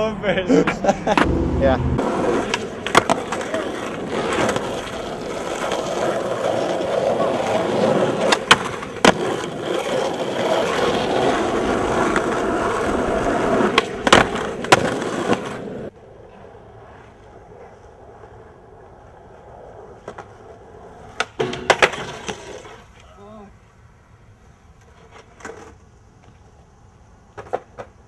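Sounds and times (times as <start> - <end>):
skateboard wheels rolling on pavement: 0.0 - 28.0
skateboard clacks: 2.0 - 23.0, 27.2 - 28.0.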